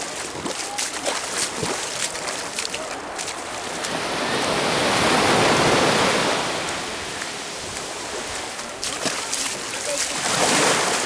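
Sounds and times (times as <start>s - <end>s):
rushing water: 0.0s - 11.0s.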